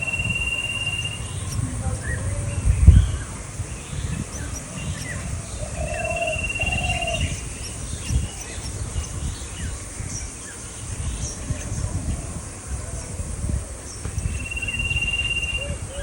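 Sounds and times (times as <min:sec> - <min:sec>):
bird trill: 0:00.0 - 0:10.6, 0:14.2 - 0:16.0
birds chirping: 0:00.0 - 0:16.0
steady low rumble: 0:00.0 - 0:16.0.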